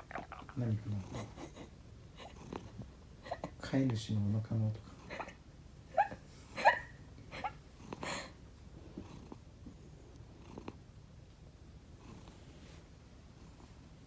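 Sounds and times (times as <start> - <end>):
cat snoring: 2.3 - 2.8, 7.8 - 8.3, 8.9 - 9.4, 10.3 - 10.8, 12.0 - 12.4.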